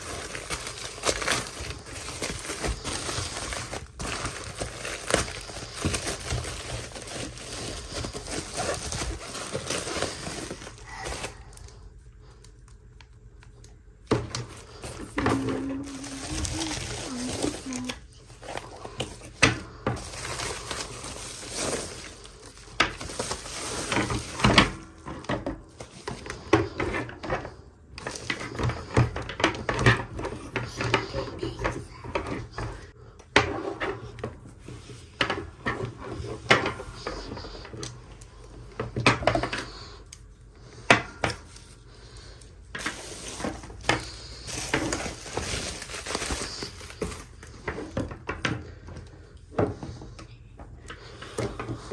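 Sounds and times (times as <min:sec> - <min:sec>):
packaging rustling: 0:00.0 - 0:13.2, 0:14.3 - 0:25.0, 0:25.7 - 0:26.8, 0:28.0 - 0:28.9, 0:41.1 - 0:48.0.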